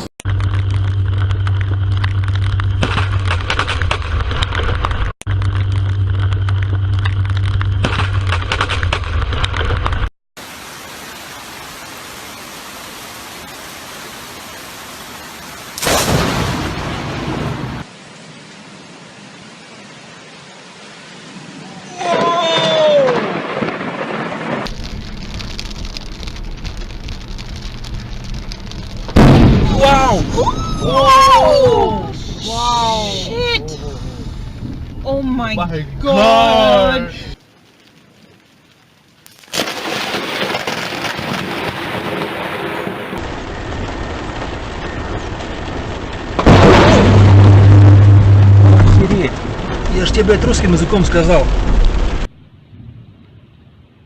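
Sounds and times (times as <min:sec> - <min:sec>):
heavy rain hissing: 0:10.4 - 0:38.7, 0:41.9 - 0:52.3
low thunder rumble: 0:22.6 - 0:32.3, 0:39.8 - 0:54.0.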